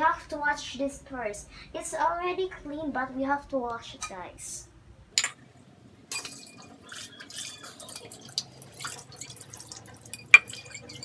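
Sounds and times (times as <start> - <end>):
tap water running and splashing: 6.1 - 11.0.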